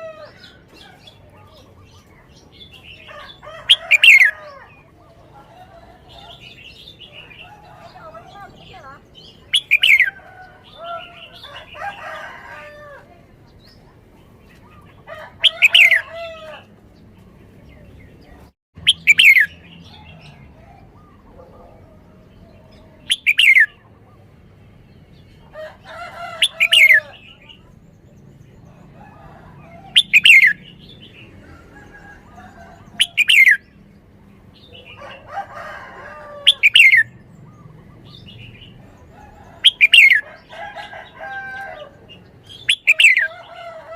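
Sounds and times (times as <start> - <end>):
bird chattering: 0.0 - 12.7, 14.8 - 16.4, 18.8 - 20.2, 20.8 - 24.2, 29.9 - 31.2, 32.8 - 33.7, 36.5 - 40.5, 42.2 - 43.5.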